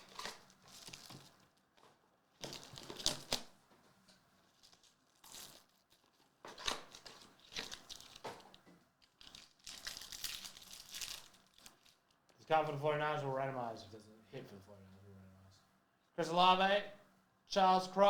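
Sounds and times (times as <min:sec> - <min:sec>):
card wrappers tearing and crinkling: 0:00.0 - 0:01.7, 0:02.4 - 0:03.6, 0:04.5 - 0:12.1.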